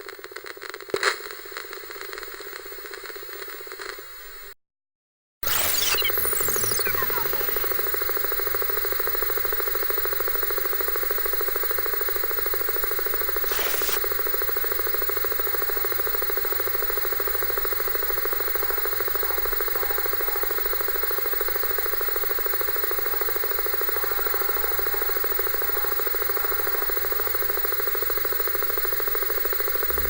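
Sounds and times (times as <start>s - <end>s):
falling whine: 5.4s - 8.0s
pulsing television static buzz: 5.4s - 30.0s.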